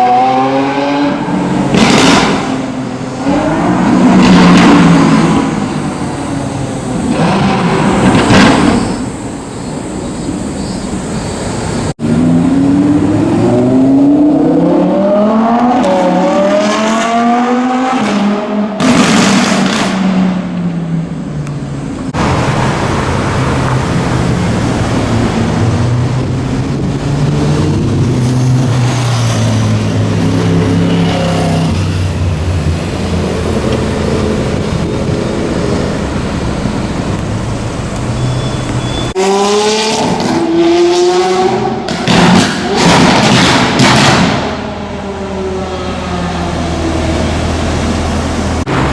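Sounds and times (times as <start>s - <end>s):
car accelerating: 11.6s - 20.6s, 21.7s - 48.9s.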